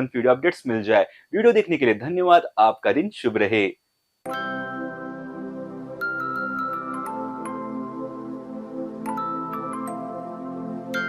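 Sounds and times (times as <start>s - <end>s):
bell-like notes: 9.0s - 11.0s.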